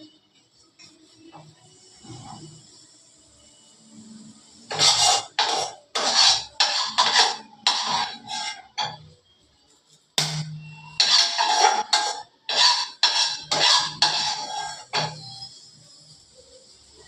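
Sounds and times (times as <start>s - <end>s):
utensils scraping cookware: 4.6s - 9.2s, 10.2s - 15.6s.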